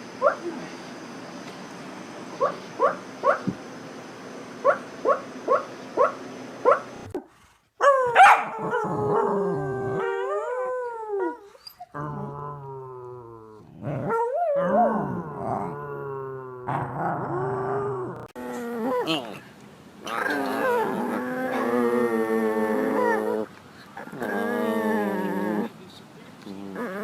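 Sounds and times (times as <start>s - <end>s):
dog yelping: 2.4s - 3.5s, 4.6s - 7.1s, 7.8s - 8.8s
dog howling: 7.8s - 13.4s, 20.1s - 23.5s.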